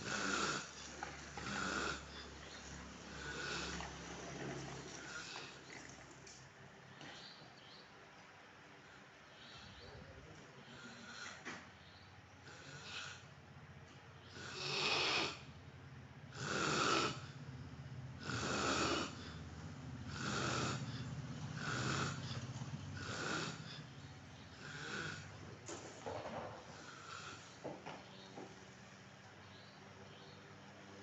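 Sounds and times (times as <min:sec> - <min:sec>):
man snoring: 0:00.0 - 0:04.0, 0:05.0 - 0:05.6, 0:10.6 - 0:11.5, 0:12.4 - 0:13.3, 0:14.3 - 0:15.5, 0:16.3 - 0:17.4, 0:18.2 - 0:19.4, 0:20.1 - 0:23.9, 0:24.5 - 0:25.3, 0:26.6 - 0:27.6.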